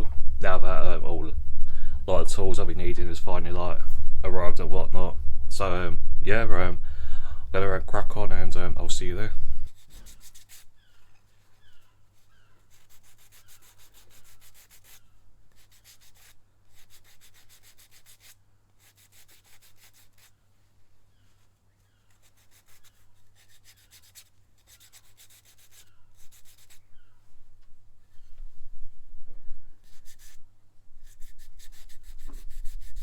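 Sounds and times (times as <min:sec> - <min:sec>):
sandpaper rasping on plastic: 0:09.7 - 0:20.4, 0:22.0 - 0:26.9, 0:29.8 - 0:30.4, 0:31.0 - 0:33.0.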